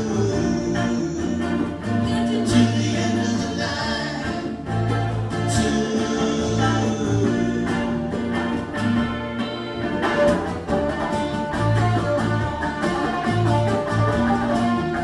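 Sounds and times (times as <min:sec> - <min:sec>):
bass line: 0:00.0 - 0:15.0
guitars playing melody: 0:00.0 - 0:15.0
light percussion: 0:04.3 - 0:15.0.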